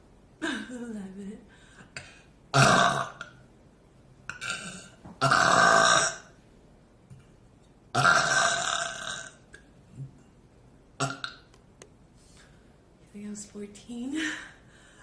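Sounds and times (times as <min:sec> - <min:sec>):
girl burping: 0:02.6 - 0:03.3, 0:04.3 - 0:06.3, 0:08.0 - 0:09.4.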